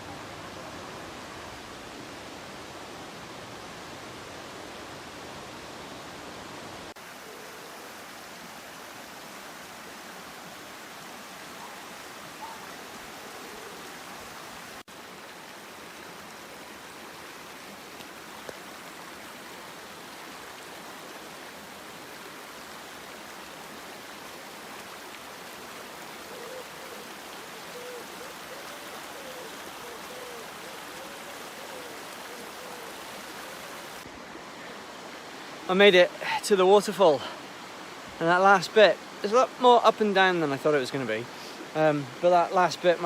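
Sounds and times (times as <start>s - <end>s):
waterfall rushing: 0.0s - 43.0s.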